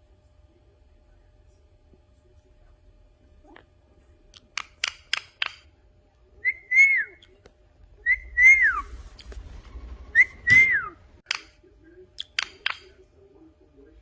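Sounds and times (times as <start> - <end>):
parrot whistling: 6.4 - 7.2, 8.0 - 8.9, 10.1 - 11.0.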